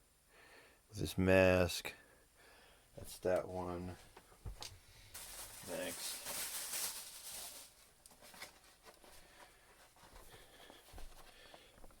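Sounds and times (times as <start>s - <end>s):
packaging rustling: 5.1s - 9.2s.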